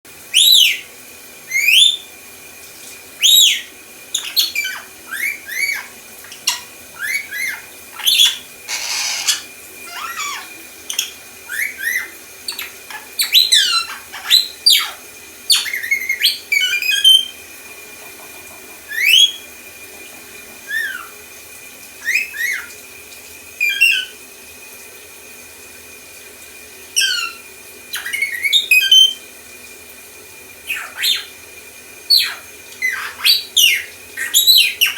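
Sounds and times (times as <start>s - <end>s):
parrot hiss: 2.8s - 15.0s
parrot whistles chirps and beeps: 4.2s - 14.0s.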